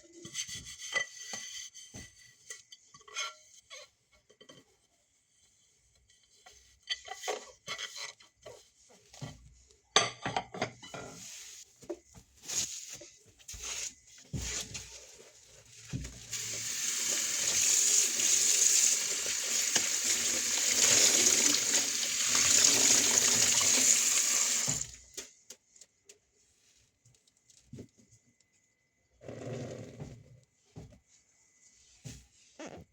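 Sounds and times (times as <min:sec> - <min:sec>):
dishes clinking and knocking: 0:09.9 - 0:11.2
tap running into sink: 0:15.9 - 0:25.0.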